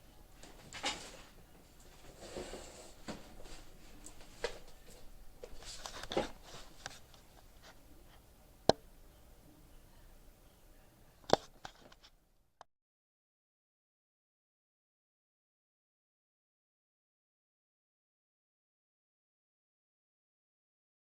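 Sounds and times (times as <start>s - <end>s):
soft handling knocks and rustles: 0.4s - 7.8s.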